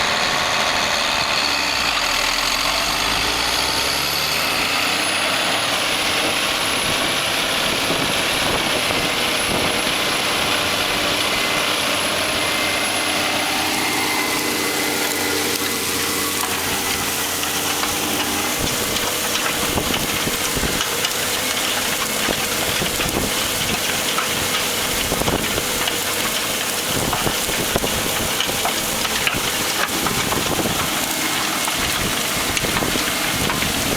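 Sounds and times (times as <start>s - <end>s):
tractor diesel engine running: 0.0s - 33.9s.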